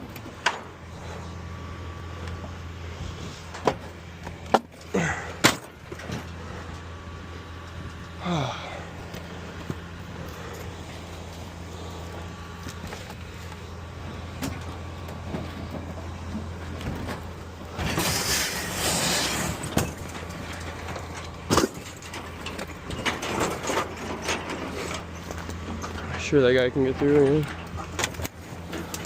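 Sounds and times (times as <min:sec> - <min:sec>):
vehicle engine idling: 0:00.0 - 0:29.0
scrap metal clattering: 0:15.2 - 0:26.3
scrap metal scraping: 0:16.8 - 0:26.2.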